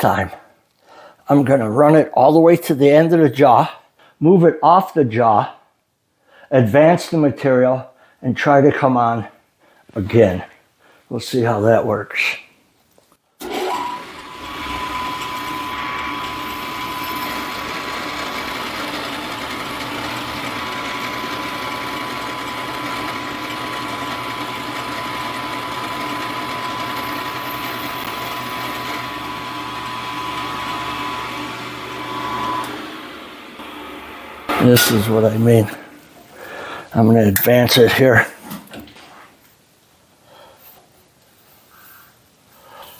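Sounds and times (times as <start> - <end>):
milling machine cutting: 13.4 - 36.2.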